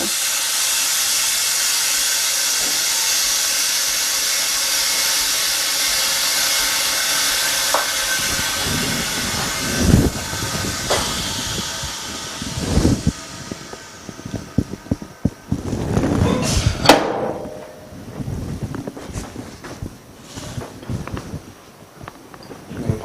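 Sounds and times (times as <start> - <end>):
compressed air hissing: 0.0 - 17.2.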